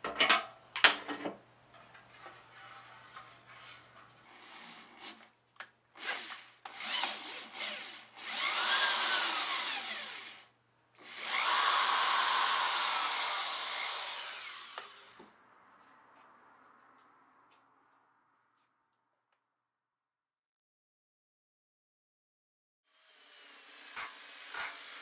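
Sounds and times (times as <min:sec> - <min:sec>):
power grinder on steel: 0:06.0 - 0:15.2, 0:22.9 - 0:25.0.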